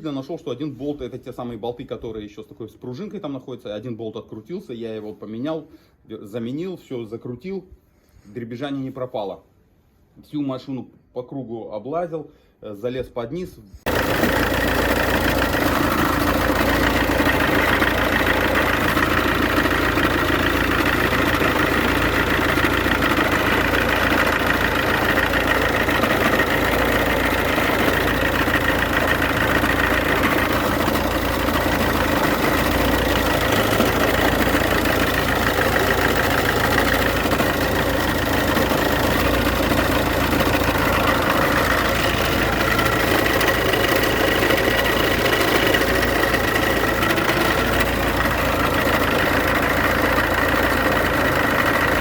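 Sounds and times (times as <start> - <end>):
diesel engine idling: 13.9 - 52.0.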